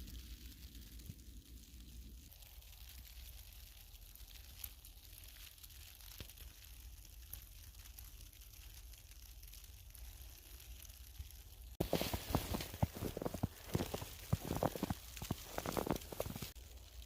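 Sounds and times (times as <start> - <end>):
snowstorm hiss: 0.0 - 17.0
low wind rumble: 10.9 - 17.0.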